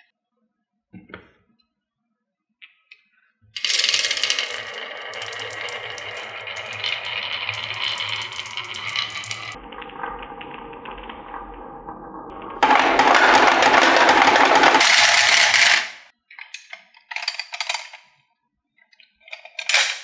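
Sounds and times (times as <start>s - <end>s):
marbles rattling down wooden run: 3.6s - 9.6s, 12.4s - 16.0s, 19.6s - 20.0s.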